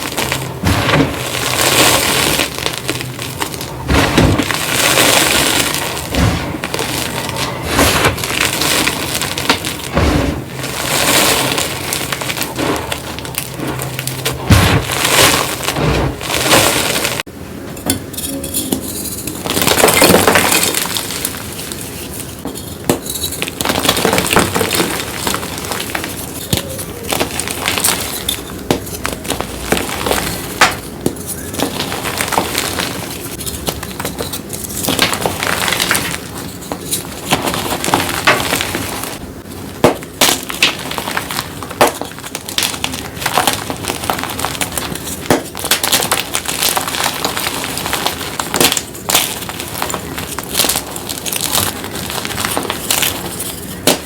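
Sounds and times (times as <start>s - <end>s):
chalk crumbling with crisp crunches: 0.0s - 17.3s, 39.8s - 54.0s.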